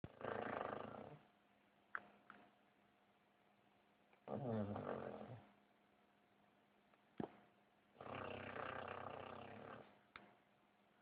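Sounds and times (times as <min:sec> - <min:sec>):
dog snoring: 0:00.1 - 0:01.2, 0:04.3 - 0:05.5, 0:08.0 - 0:10.0.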